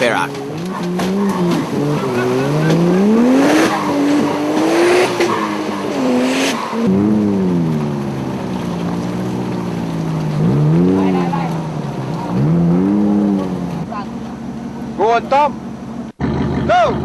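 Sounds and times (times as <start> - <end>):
truck engine revving: 0.0 - 17.0.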